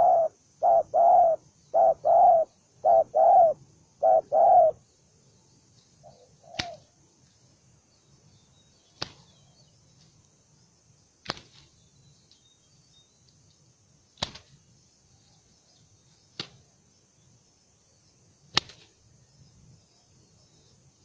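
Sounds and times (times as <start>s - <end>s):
faint high hiss: 0.0s - 21.0s.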